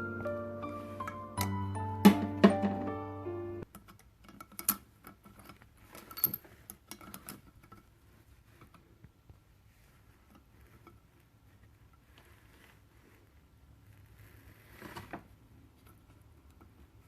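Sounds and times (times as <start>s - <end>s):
small metal parts clicking: 3.7s - 7.9s.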